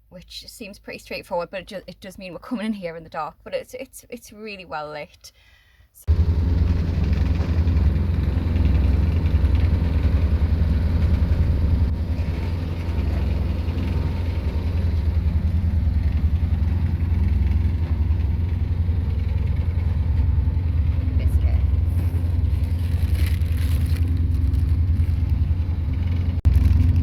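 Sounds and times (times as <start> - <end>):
boat engine throbbing: 6.1 - 27.0.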